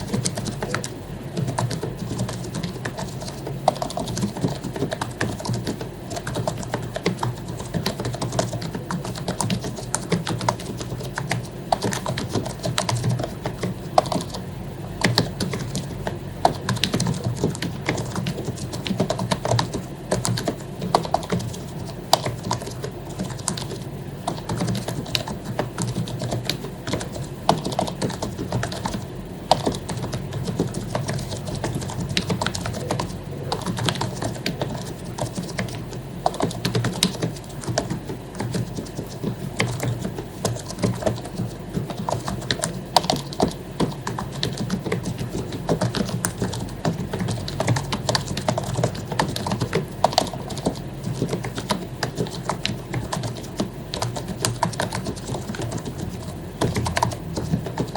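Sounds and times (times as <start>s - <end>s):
fast typing on keyboard: 0.0s - 57.9s.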